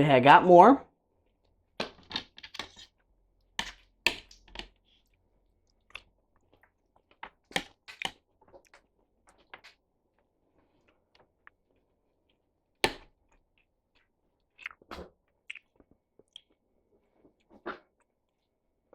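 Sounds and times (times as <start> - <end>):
chewing: 4.4 - 9.8, 13.5 - 18.6.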